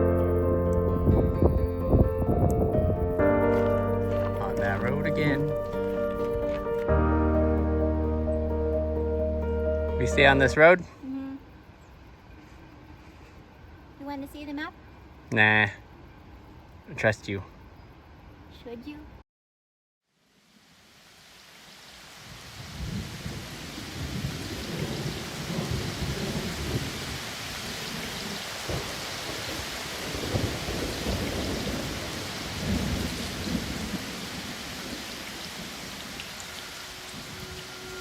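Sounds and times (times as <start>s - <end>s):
low thunder rumbling: 0.0s - 6.4s, 22.7s - 38.0s
steady rain: 3.4s - 6.9s, 20.2s - 38.0s.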